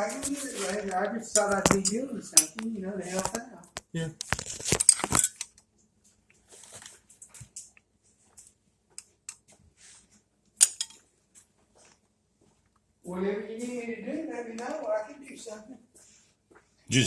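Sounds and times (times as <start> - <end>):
metal parts clinking and rattling: 4.4 - 5.5.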